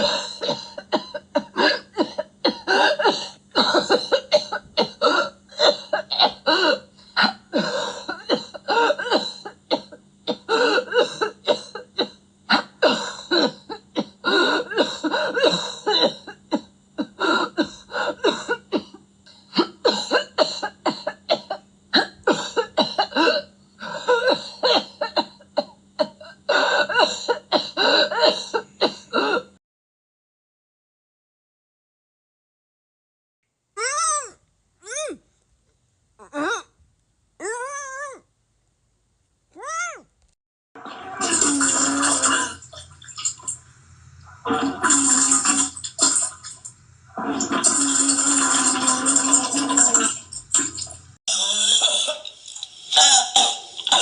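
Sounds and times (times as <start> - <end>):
person coughing: 0.0 - 19.0, 19.6 - 29.5, 52.9 - 54.0.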